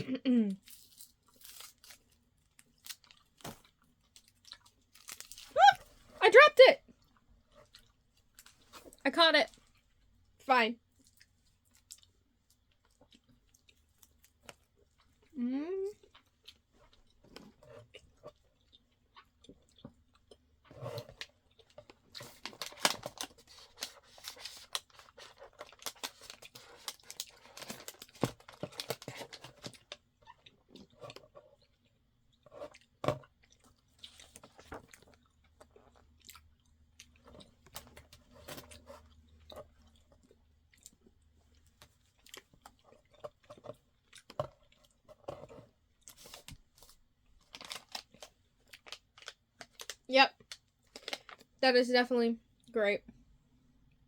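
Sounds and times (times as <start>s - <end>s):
wet chewing with mouth smacks: 10.9s - 15.3s, 15.9s - 27.5s, 28.4s - 51.5s.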